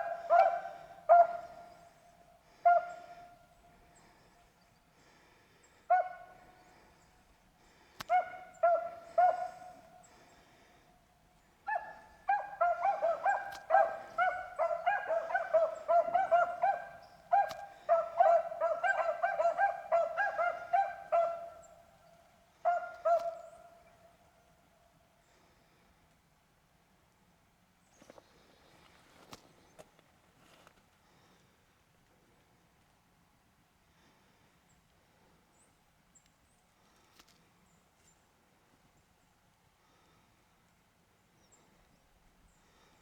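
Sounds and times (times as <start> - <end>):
beagles baying: 0.0 - 4.3, 5.9 - 6.8, 7.7 - 10.6, 11.6 - 21.8, 22.6 - 24.2.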